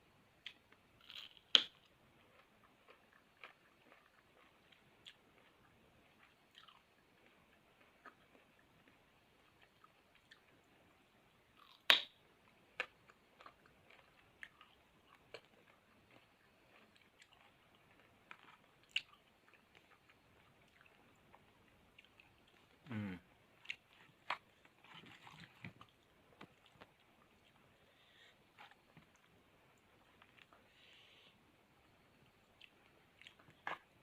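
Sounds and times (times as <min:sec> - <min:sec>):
person chewing fruit: 0:00.4 - 0:10.7, 0:11.5 - 0:31.0, 0:32.3 - 0:34.0.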